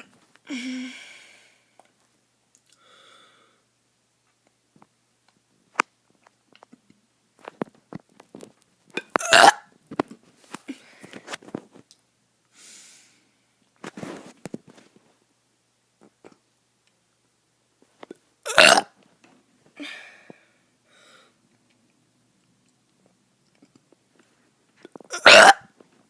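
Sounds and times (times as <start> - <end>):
child burping: 9.0 - 9.6, 18.5 - 18.9, 25.1 - 25.7.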